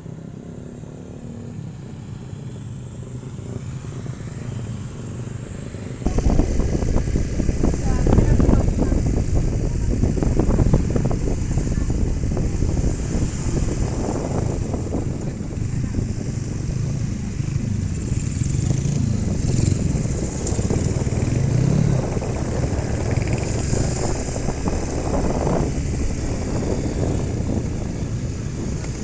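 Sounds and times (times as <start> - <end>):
wind rumbling on microphone: 0.0 - 29.0
vehicle engine running: 6.0 - 29.0.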